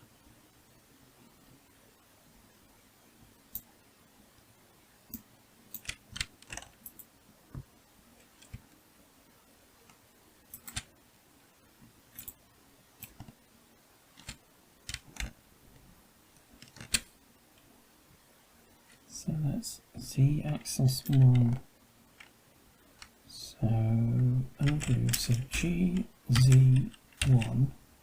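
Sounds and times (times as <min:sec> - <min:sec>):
keyboard keystrokes: 0:05.8 - 0:07.1, 0:10.6 - 0:10.9, 0:16.6 - 0:17.1, 0:24.6 - 0:27.6.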